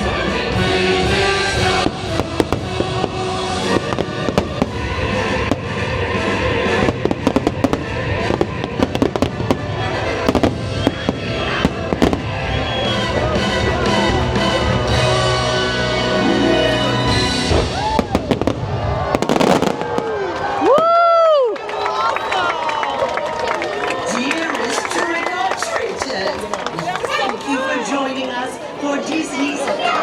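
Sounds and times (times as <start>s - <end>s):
fireworks bursting and crackling: 0.0s - 15.5s, 17.0s - 21.0s
soundtrack music: 0.0s - 18.0s.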